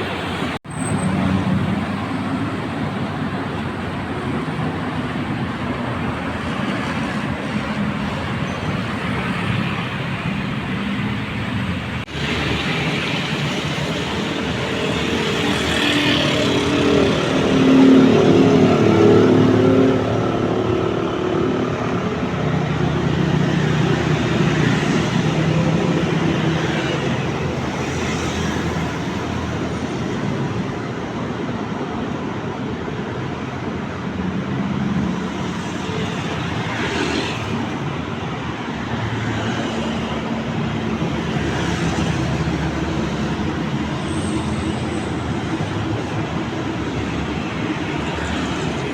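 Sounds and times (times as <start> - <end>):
road traffic passing: 0.0 - 48.9
close vehicle passing: 12.0 - 29.7.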